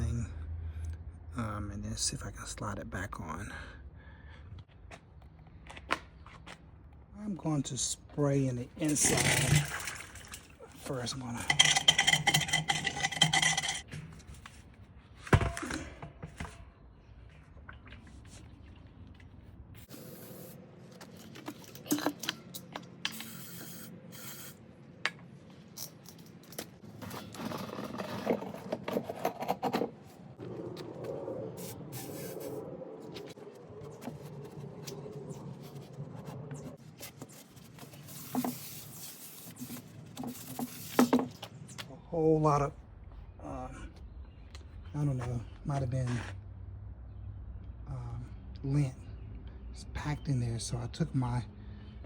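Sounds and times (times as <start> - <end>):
metal parts scraping and clicking: 11.4 - 13.9.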